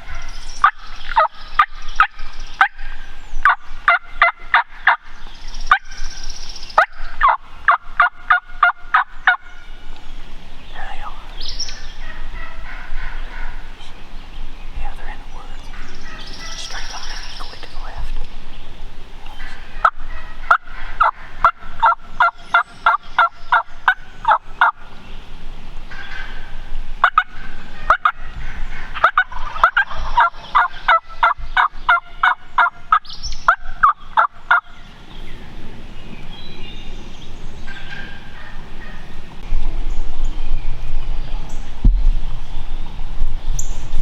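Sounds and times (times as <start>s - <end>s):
turkey yelping: 0.0s - 5.0s, 6.8s - 9.6s, 11.8s - 13.8s, 19.4s - 24.8s, 25.9s - 34.8s, 37.7s - 39.1s.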